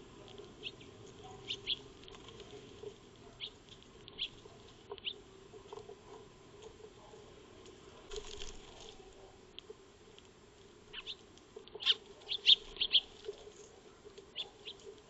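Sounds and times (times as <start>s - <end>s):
sparrows chirping: 0.1s - 6.9s, 10.8s - 15.0s.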